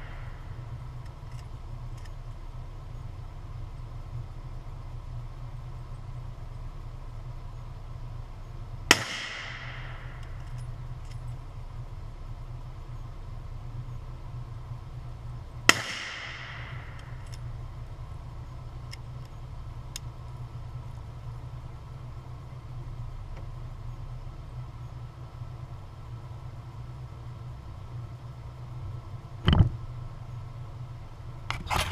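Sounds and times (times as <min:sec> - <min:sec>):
steady low rumble: 0:00.0 - 0:31.9
rifle shots: 0:08.9 - 0:10.5, 0:15.7 - 0:17.2.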